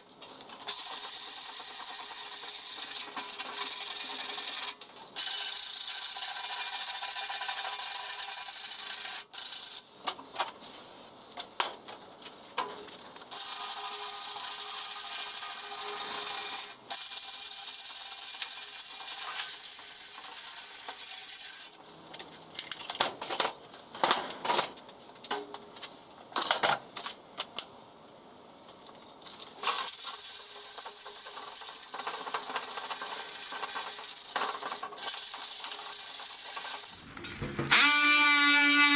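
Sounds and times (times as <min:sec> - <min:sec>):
knocks and clicks: 0:37.0 - 0:37.9
power sander on metal: 0:37.0 - 0:38.9.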